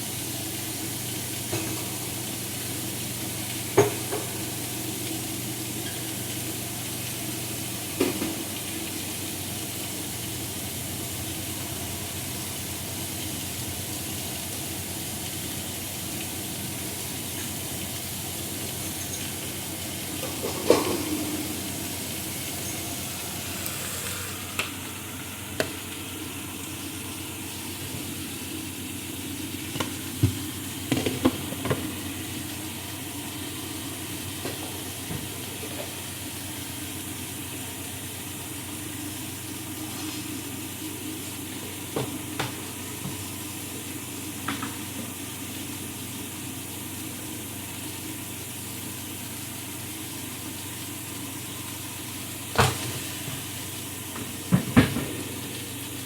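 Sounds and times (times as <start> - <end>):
food sizzling in a frying pan: 0.0 - 56.0.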